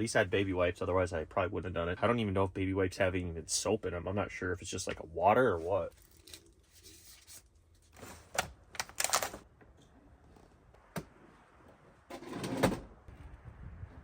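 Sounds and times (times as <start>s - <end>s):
rustling of small objects: 5.8s - 9.4s.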